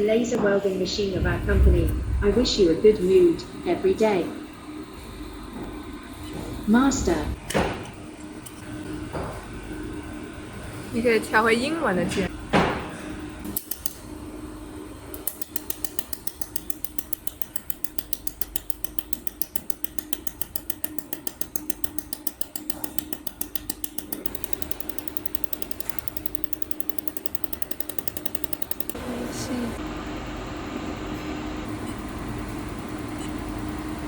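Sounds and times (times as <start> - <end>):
steady hum: 0.0 - 7.4, 8.4 - 34.0
laser welder clicking pulses: 13.5 - 14.0, 15.1 - 29.0.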